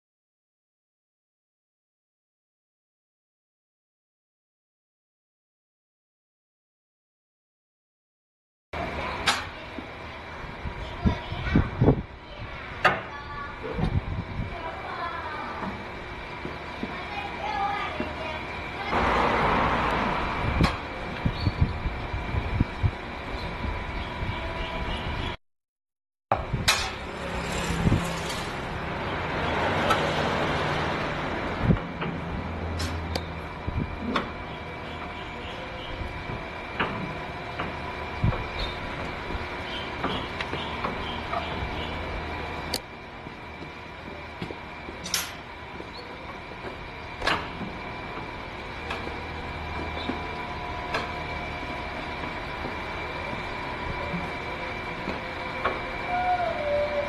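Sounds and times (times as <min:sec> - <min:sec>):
workshop hum: 0:08.8 - 0:25.4, 0:26.3 - 0:57.0
whining tones: 0:46.2 - 0:57.0.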